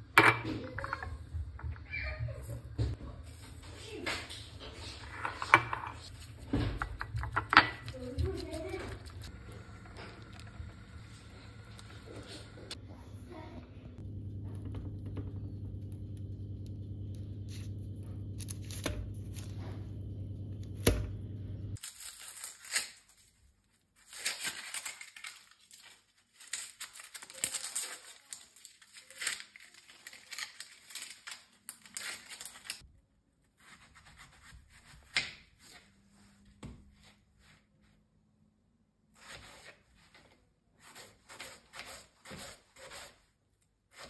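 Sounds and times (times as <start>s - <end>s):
crinkling and rustling: 0.6s - 12.8s, 21.8s - 32.8s
steady low hum: 5.0s - 21.8s.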